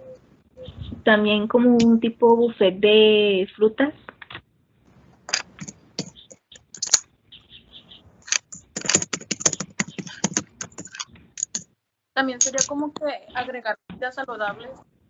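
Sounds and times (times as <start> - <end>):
quick clicks and taps: 5.3 - 7.0, 8.3 - 11.6, 12.4 - 12.7.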